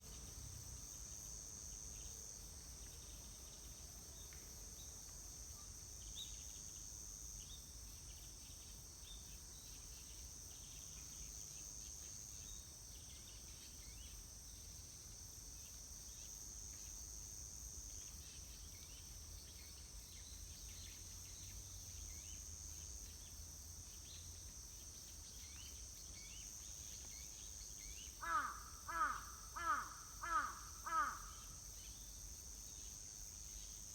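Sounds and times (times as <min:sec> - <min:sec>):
insects droning: 0:00.0 - 0:33.9
crow cawing loudly: 0:28.2 - 0:31.4.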